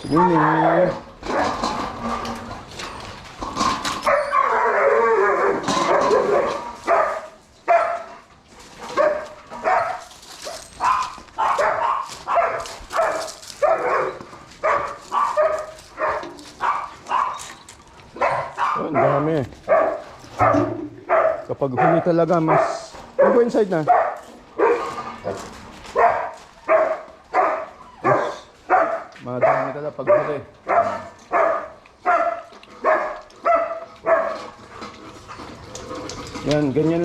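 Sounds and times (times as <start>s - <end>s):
dog barking: 4.1s - 8.1s, 8.9s - 17.4s, 18.2s - 34.4s.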